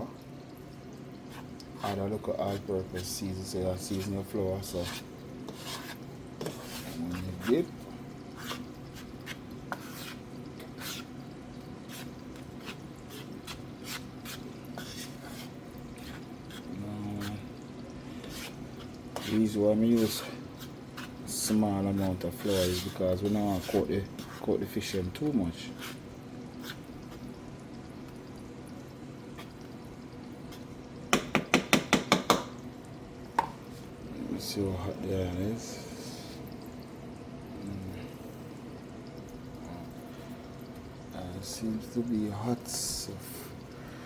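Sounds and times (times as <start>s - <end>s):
faint steady background noise: 0.0s - 44.0s
kitchenware being tapped: 31.1s - 32.6s, 33.4s - 33.6s.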